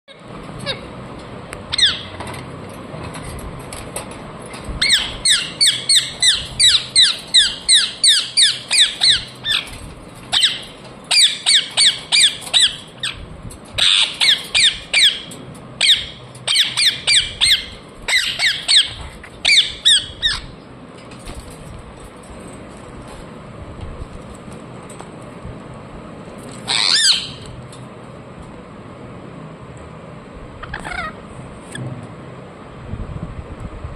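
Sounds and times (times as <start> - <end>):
parrot squawking chirps: 1.7 - 2.2, 4.8 - 13.2, 13.8 - 20.5, 26.6 - 27.5, 30.6 - 31.2.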